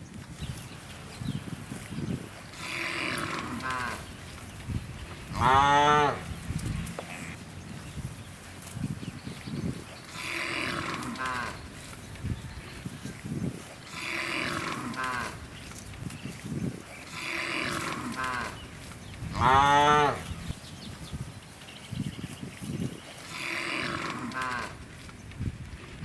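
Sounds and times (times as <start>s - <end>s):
cows mooing: 2.3s - 7.4s, 10.0s - 15.6s, 16.8s - 20.6s, 23.1s - 24.8s.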